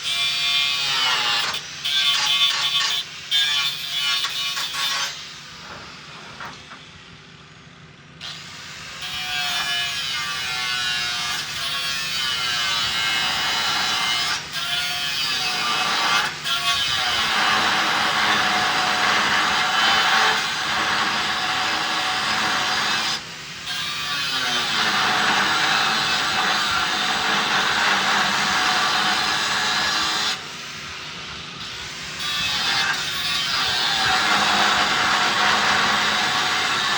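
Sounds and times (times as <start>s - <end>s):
angle grinder cutting metal rod: 9.1s - 36.9s.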